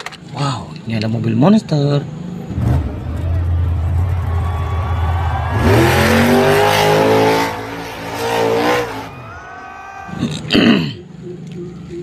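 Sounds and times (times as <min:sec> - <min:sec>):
engine revving: 0:02.5 - 0:09.2.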